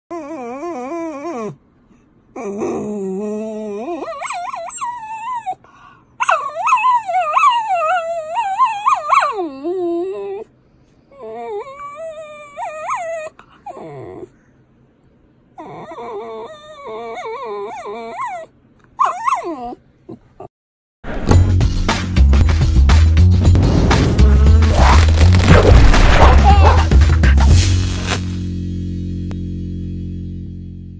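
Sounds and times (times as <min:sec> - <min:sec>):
puppy howling and whining: 0:00.1 - 0:01.6, 0:02.3 - 0:05.6, 0:06.2 - 0:14.4, 0:15.5 - 0:20.4.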